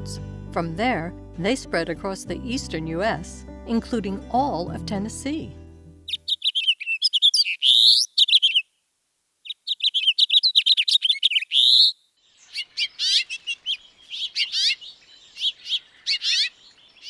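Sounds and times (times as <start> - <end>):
quick sweeping bird chirps: 6.1 - 8.6, 9.4 - 17.0.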